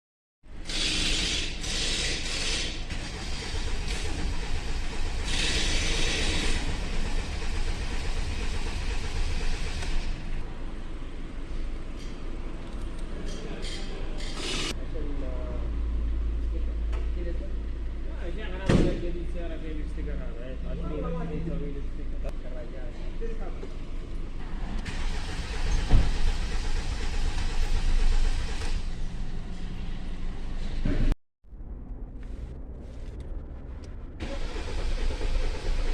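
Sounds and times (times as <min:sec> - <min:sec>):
hiss bursts: 0:00.6 - 0:10.2
car engine running: 0:02.9 - 0:11.0, 0:24.4 - 0:30.9, 0:31.6 - 0:35.9.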